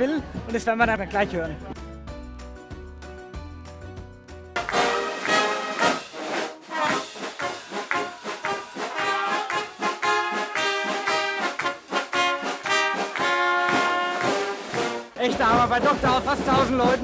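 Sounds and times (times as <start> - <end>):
quieter bass-heavy music: 0.0 - 5.0
brass band playing: 4.6 - 17.0.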